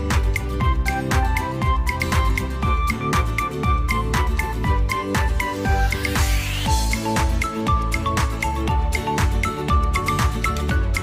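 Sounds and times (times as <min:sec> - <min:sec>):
electronic background music: 0:00.0 - 0:11.0
kick drum beat: 0:06.7 - 0:11.0.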